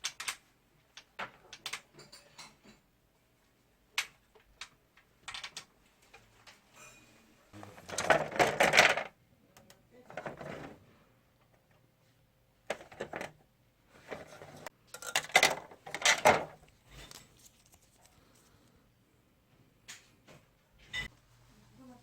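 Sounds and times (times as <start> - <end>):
small hard parts clinking: 14.9 - 18.2.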